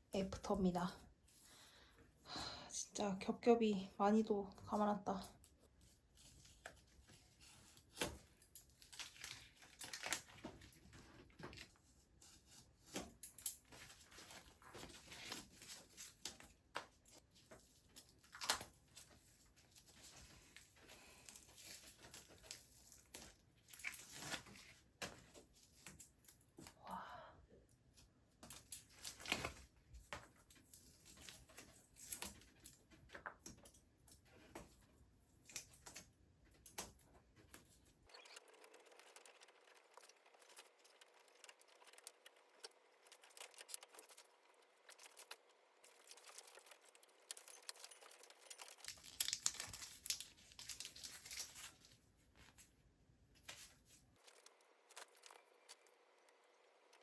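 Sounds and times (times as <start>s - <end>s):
handlebar tape crinkling and peeling: 6.2s - 25.9s, 36.8s - 52.8s.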